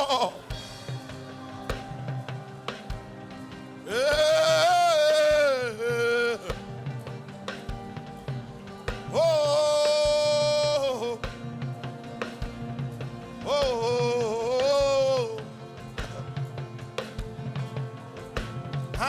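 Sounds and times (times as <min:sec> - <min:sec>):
voice holding long notes: 0:00.0 - 0:01.5, 0:03.8 - 0:07.0, 0:09.1 - 0:11.4
worship background music: 0:00.0 - 0:19.0.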